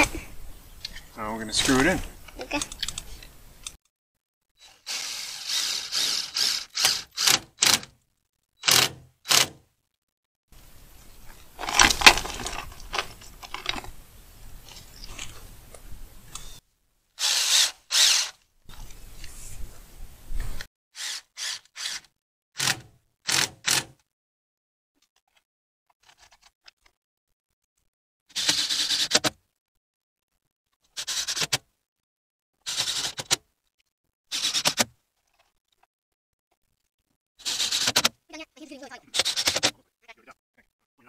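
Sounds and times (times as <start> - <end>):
power drill driving screws into metal: 4.6 - 8.0, 8.6 - 9.6, 17.2 - 18.4, 21.0 - 24.0, 28.4 - 29.3, 32.7 - 33.4, 39.1 - 39.7.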